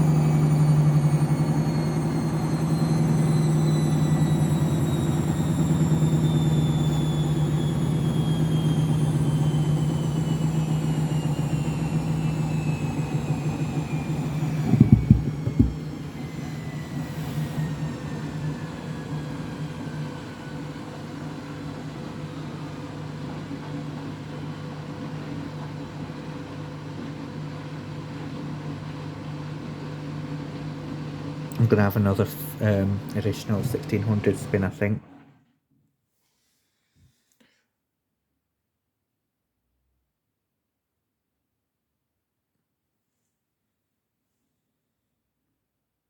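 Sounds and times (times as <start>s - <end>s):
washing machine spin winding down: 0.0s - 35.3s
washing machine knocks: 14.7s - 15.8s.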